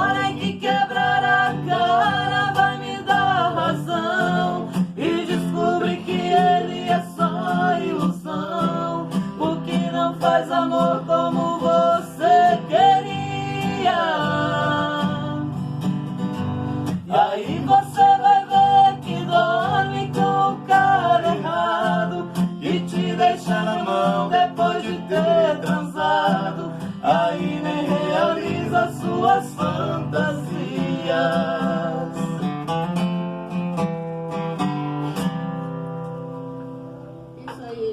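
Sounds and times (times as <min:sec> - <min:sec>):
person singing: 0:00.0 - 0:15.6, 0:17.0 - 0:32.4
acoustic guitar strumming: 0:00.0 - 0:37.9.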